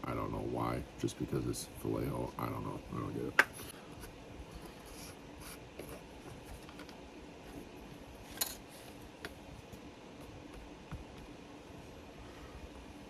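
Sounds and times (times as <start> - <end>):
room hum: 0.0 - 13.0.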